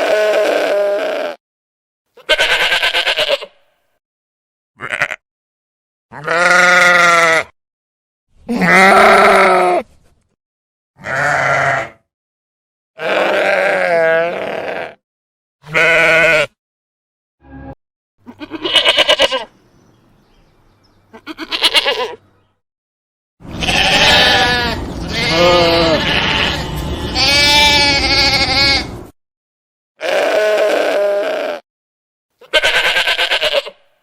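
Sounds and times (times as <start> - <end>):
sheep bleating: 0.0 - 1.4, 2.1 - 3.6, 4.8 - 5.2, 6.1 - 7.6, 8.5 - 9.8, 11.0 - 12.0, 13.0 - 15.0, 15.6 - 16.6, 18.2 - 19.5, 21.1 - 22.2, 23.4 - 29.0, 30.0 - 31.6, 32.4 - 33.9.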